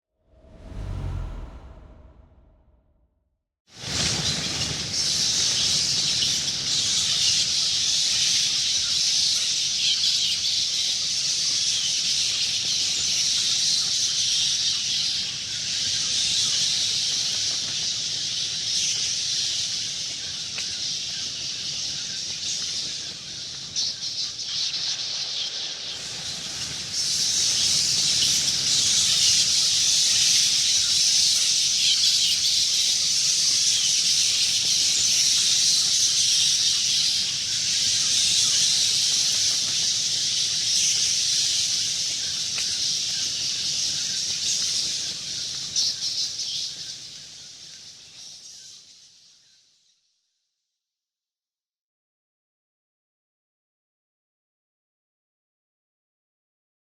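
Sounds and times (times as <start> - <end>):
swarm of bats squeaking: 4.0 - 49.4.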